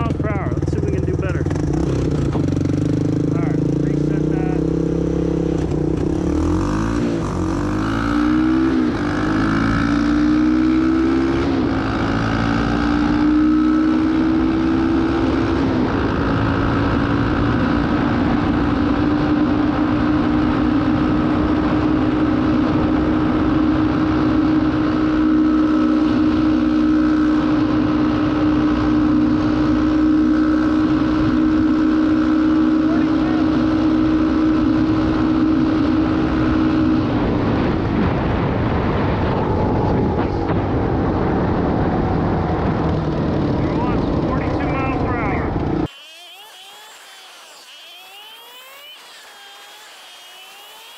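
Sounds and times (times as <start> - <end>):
atv engine accelerating: 0.0 - 50.9.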